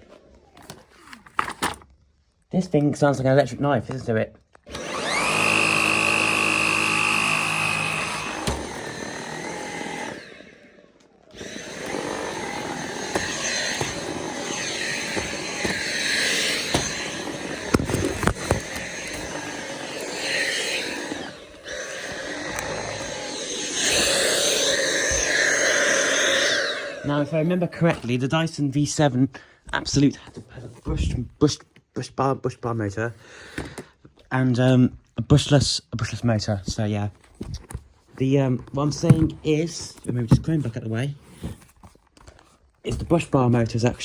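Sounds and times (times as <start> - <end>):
stick vacuum whining: 4.7 - 28.3.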